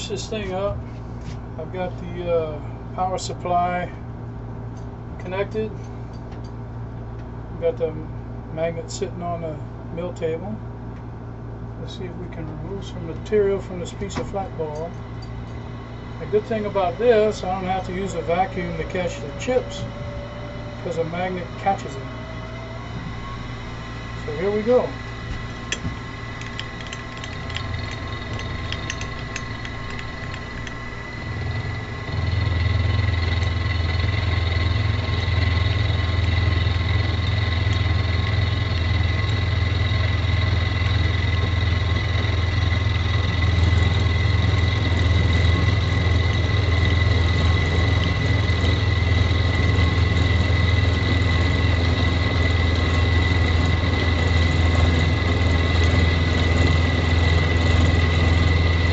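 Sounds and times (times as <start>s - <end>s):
milling machine whining: 12.4s - 58.9s.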